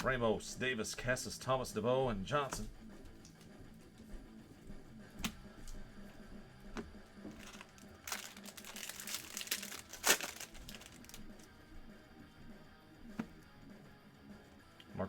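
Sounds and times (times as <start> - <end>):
cards being handled: 6.8 - 11.5
card pack wrapper crinkling: 7.3 - 11.5.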